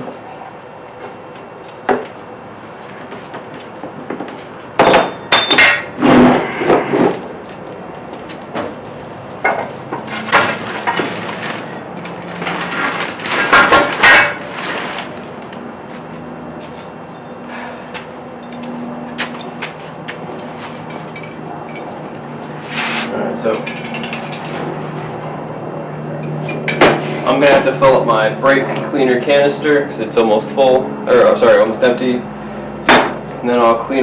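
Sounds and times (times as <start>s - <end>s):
metal tools clanking: 4.8s - 6.9s, 18.4s - 22.2s, 23.4s - 24.7s.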